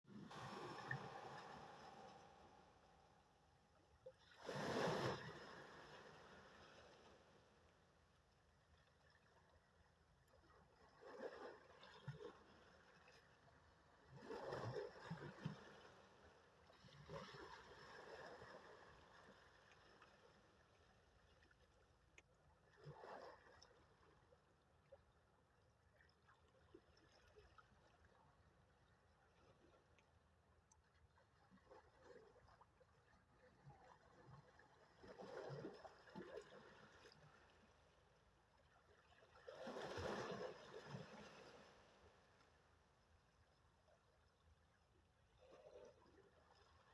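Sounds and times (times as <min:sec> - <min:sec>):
faint sea waves washing in: 0:00.1 - 0:09.6, 0:33.9 - 0:42.8.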